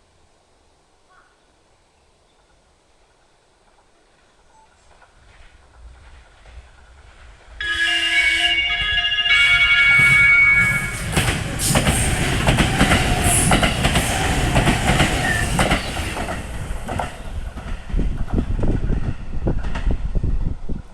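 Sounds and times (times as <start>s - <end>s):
electric train horn: 7.6s - 11.1s
train wheels clattering: 9.9s - 20.0s.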